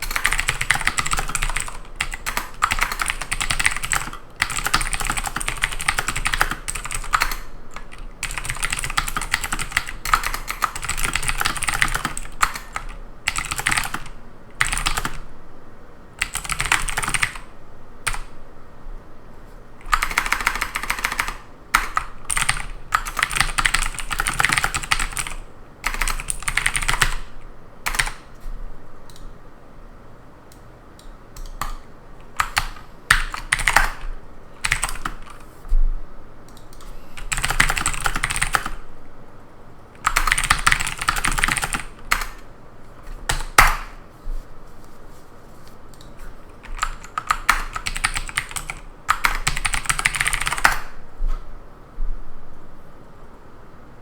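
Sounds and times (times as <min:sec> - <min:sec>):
typing on computer keyboard: 0:00.0 - 0:15.2, 0:16.2 - 0:18.4, 0:19.8 - 0:28.3, 0:31.0 - 0:35.5, 0:36.5 - 0:38.8, 0:40.0 - 0:44.0, 0:45.9 - 0:50.9.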